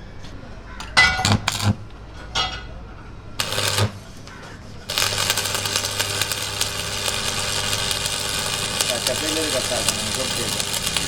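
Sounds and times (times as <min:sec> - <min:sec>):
machine running steadily: 0:03.4 - 0:04.1, 0:04.9 - 0:11.0.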